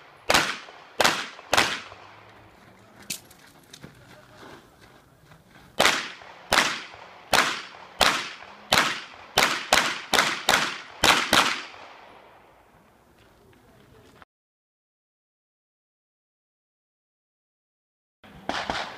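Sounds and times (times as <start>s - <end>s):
pistol shots with echo: 0.0s - 2.3s, 5.8s - 12.5s, 18.4s - 18.9s.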